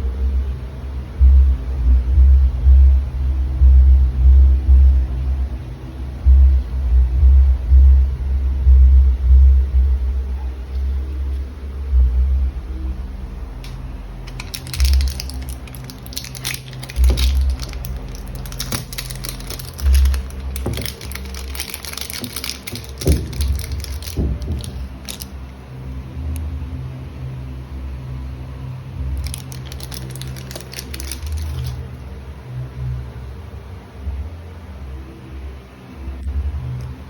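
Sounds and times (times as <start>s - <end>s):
low hum: 0.0s - 33.4s
plastic packaging crinkling and tearing: 13.6s - 25.5s, 29.1s - 31.9s
heavy handling thumps: 14.3s - 25.5s.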